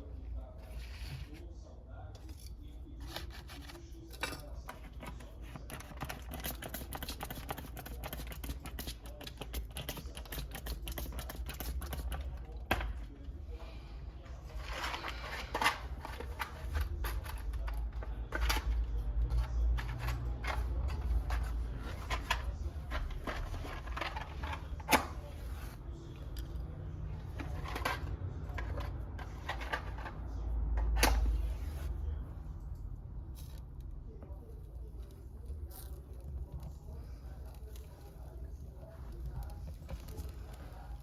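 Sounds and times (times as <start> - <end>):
objects clicking and rustling: 14.5 - 26.6.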